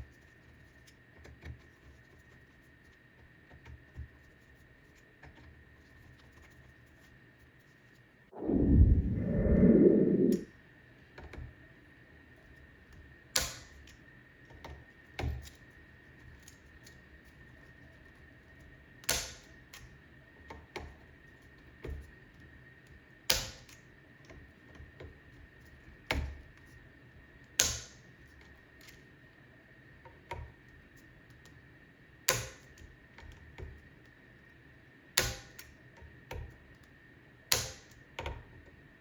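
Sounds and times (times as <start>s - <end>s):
low handling noise: 8.4s - 10.4s.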